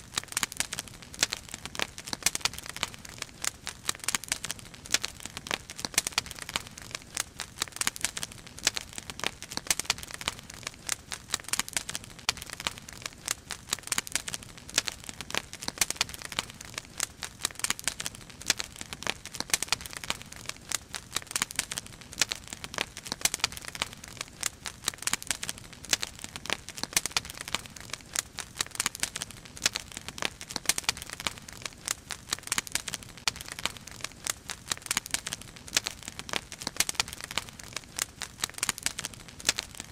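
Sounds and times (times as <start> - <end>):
firewood crackling and popping: 0.0 - 39.9.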